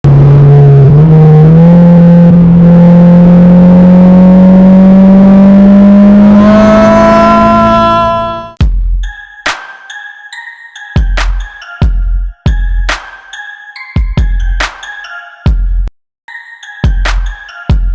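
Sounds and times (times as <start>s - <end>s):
car engine revving: 0.0s - 8.6s.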